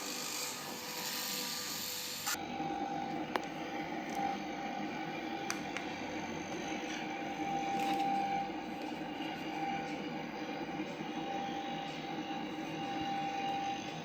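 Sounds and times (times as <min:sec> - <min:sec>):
fabric-cutting machine motor hum: 0:00.0 - 0:14.0.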